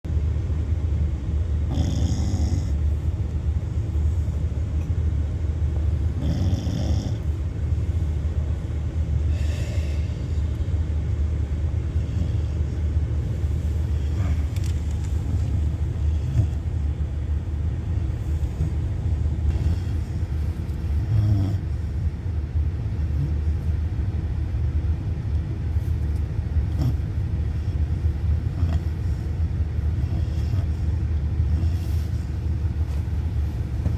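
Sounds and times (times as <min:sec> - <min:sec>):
car low rumble: 0:00.0 - 0:33.9
puppy snoring: 0:01.6 - 0:03.1, 0:05.9 - 0:07.4, 0:09.2 - 0:10.5, 0:11.8 - 0:17.3, 0:17.9 - 0:22.0, 0:23.0 - 0:23.7, 0:26.6 - 0:33.1.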